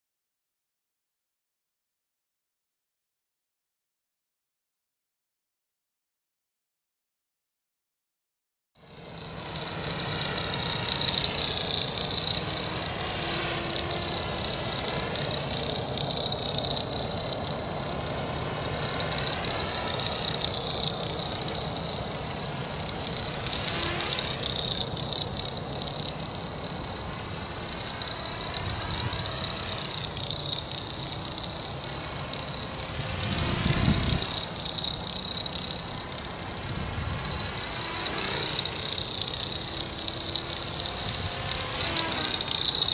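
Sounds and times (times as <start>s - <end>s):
rc helicopter hovering whine: 8.8s - 42.9s.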